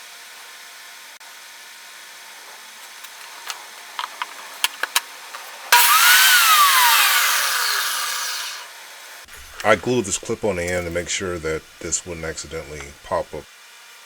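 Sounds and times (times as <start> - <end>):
table saw whining: 5.7 - 13.4.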